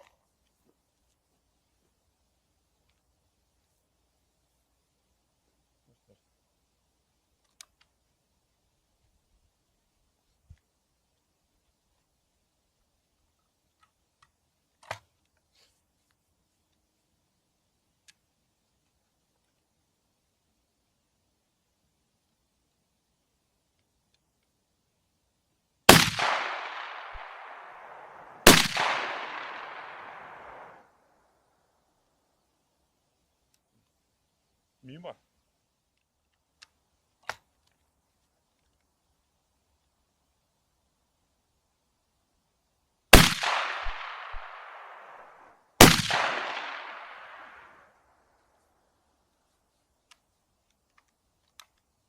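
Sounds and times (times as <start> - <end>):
shotgun shots with echo: 25.9 - 30.8, 43.2 - 47.7.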